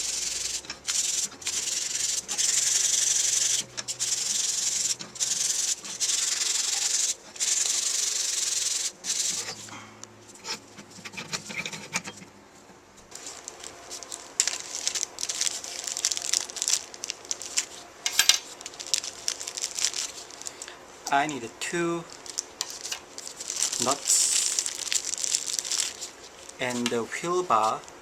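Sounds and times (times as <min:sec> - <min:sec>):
parts clicking and rattling: 0:13.2 - 0:21.2, 0:22.1 - 0:26.1.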